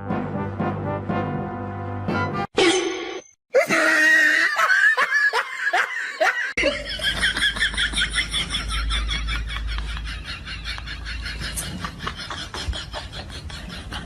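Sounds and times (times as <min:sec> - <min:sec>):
person laughing: 0:03.6 - 0:14.0.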